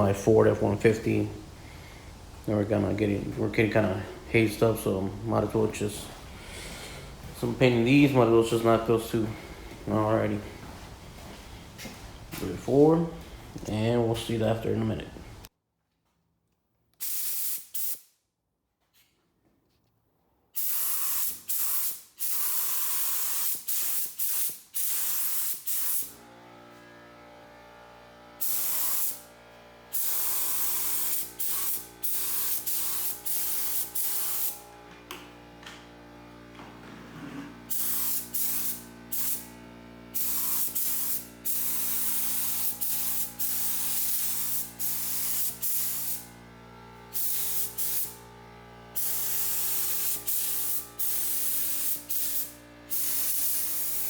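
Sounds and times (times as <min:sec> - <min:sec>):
machine hum: 0:00.0 - 0:13.6, 0:26.1 - 0:54.0
paint spray gun hissing: 0:17.0 - 0:18.1, 0:20.6 - 0:26.2, 0:28.4 - 0:34.7, 0:37.3 - 0:54.0.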